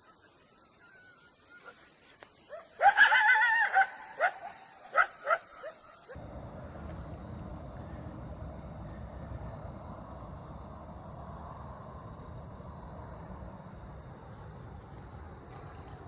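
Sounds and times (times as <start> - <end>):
crickets chirping: 0.0 - 16.0
coyote howling: 2.8 - 4.4.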